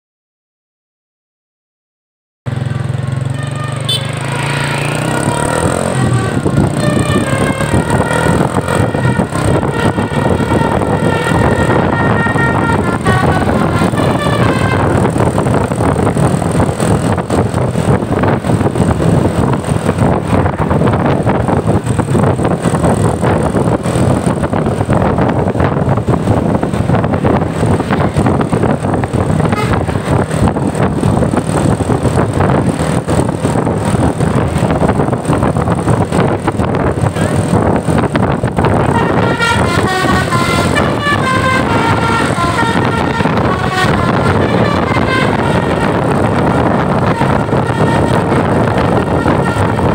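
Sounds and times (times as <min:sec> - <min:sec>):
buses passing on road: 0:02.5 - 0:49.9
multi-tone bus horn: 0:02.7 - 0:19.5, 0:23.2 - 0:30.9, 0:36.1 - 0:49.9.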